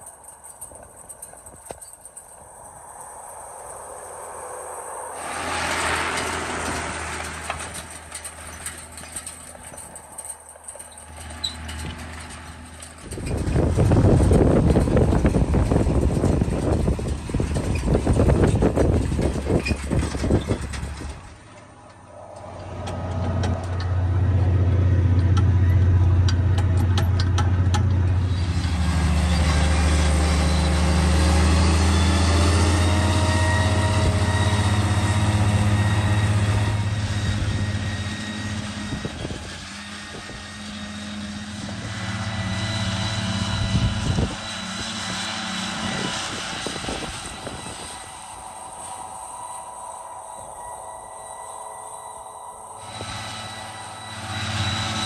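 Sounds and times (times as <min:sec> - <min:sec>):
tractor engine running: 0:00.0 - 0:55.0
wind rumble on microphone: 0:13.0 - 0:21.4, 0:23.2 - 0:55.0.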